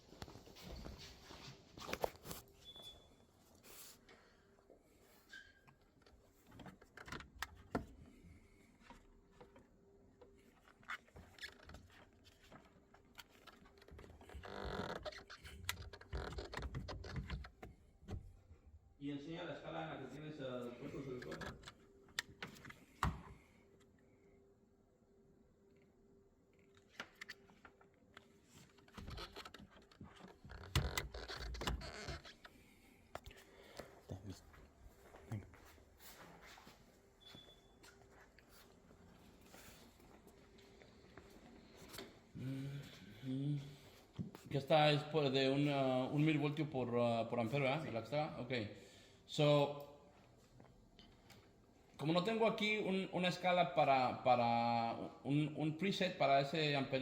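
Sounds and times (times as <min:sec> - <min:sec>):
faint steady hum: 0:17.3 - 0:52.1.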